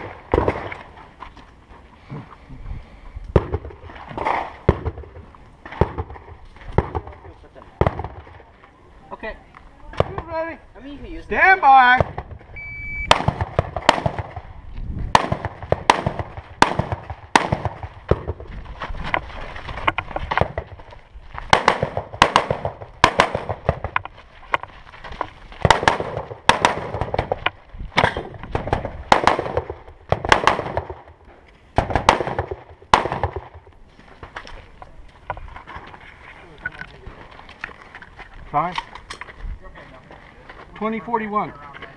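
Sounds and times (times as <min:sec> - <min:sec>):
rifle shots: 0:13.0 - 0:14.4, 0:15.1 - 0:18.4, 0:21.5 - 0:24.0, 0:25.6 - 0:27.4, 0:28.0 - 0:31.2, 0:31.8 - 0:33.7.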